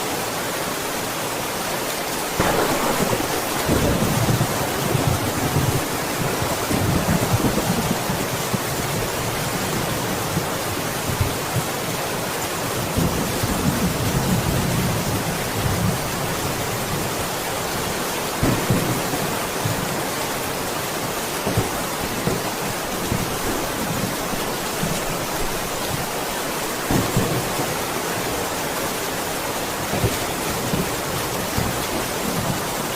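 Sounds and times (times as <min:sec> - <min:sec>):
heavy rain: 0:00.0 - 0:32.9
thunder rumbling: 0:02.4 - 0:11.8, 0:18.4 - 0:32.9.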